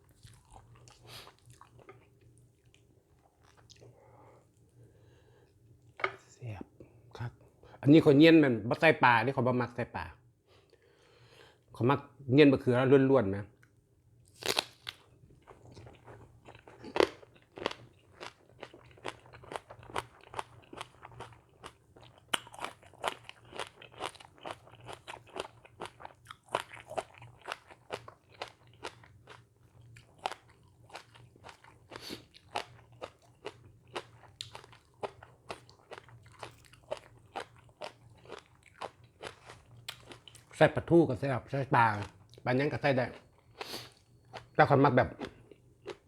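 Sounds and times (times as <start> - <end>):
person chewing crunchy food: 0.0 - 4.7, 14.3 - 40.6, 45.2 - 46.0.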